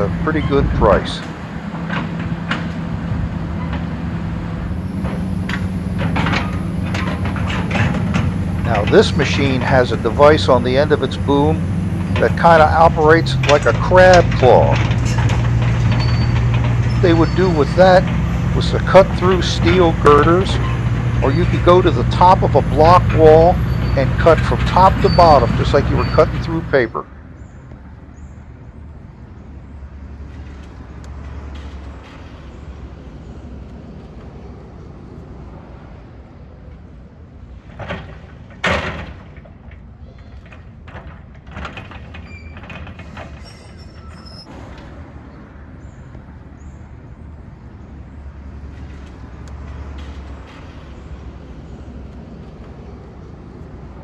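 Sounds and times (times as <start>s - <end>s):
diesel engine running: 0.0s - 27.1s.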